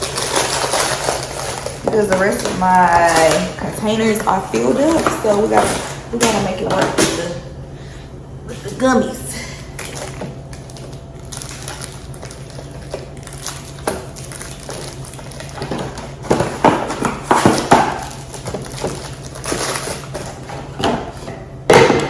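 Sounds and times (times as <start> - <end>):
packaging rustling and knocking: 0.0 - 7.2, 11.4 - 22.0
steady low hum: 0.0 - 22.0.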